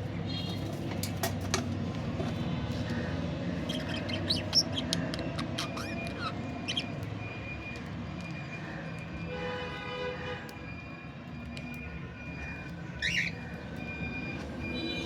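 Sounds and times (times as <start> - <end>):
budgerigars chirping: 3.6 - 7.0, 13.0 - 13.4.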